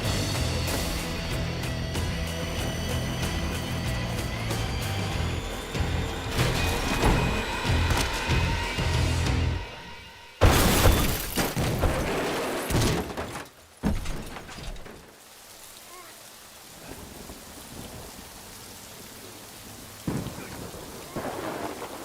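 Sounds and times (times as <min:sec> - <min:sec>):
heavy rain downpour: 0:00.0 - 0:09.8, 0:10.7 - 0:22.0
loud crash and heavy impacts: 0:10.4 - 0:14.8.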